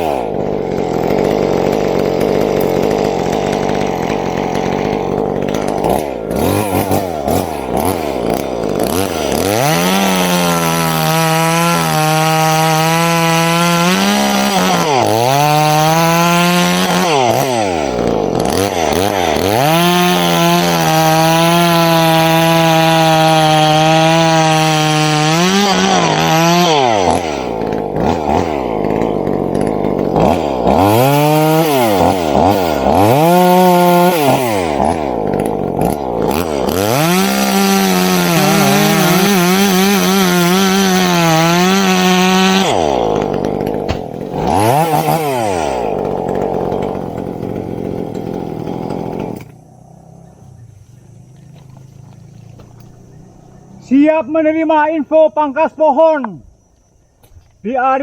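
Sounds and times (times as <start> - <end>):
chainsaw revving: 0.0 - 54.6.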